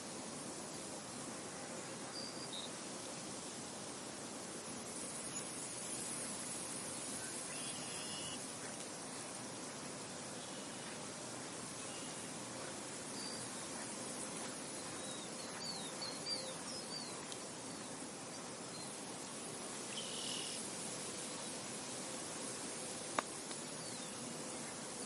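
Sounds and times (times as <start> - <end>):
insects buzzing: 0.0 - 25.0
wind hiss: 0.0 - 25.0
bird chirping: 14.8 - 17.3.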